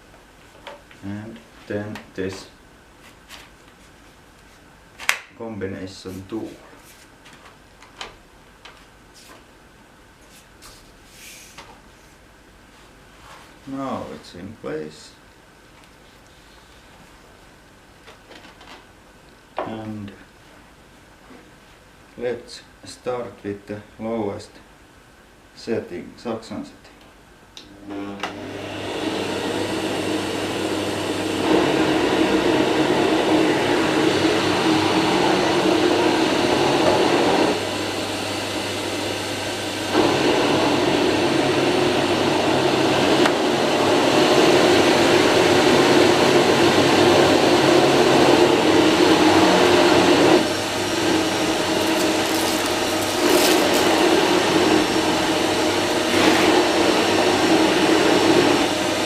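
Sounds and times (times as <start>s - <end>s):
vacuum cleaner motor hum: 27.7s - 59.0s.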